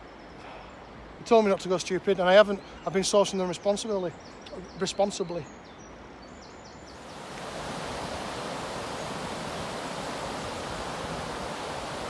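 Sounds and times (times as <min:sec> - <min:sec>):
fast-flowing water rushing: 0:06.9 - 0:12.0.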